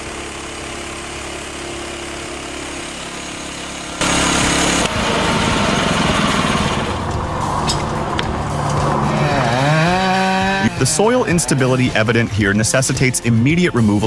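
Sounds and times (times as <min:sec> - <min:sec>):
machinery running loudly: 0:00.0 - 0:13.6.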